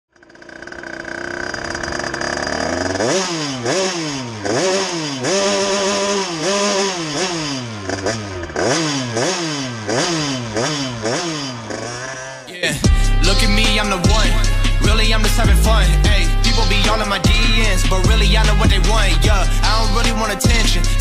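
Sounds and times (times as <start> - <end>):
two-stroke engine idling and revving: 0.1 - 21.0.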